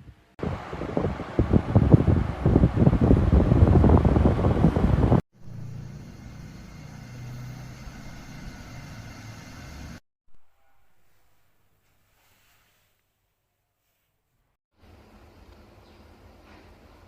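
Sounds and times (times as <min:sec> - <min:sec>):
low hum: 0:04.3 - 0:11.0
electric kettle boiling: 0:06.0 - 0:10.0.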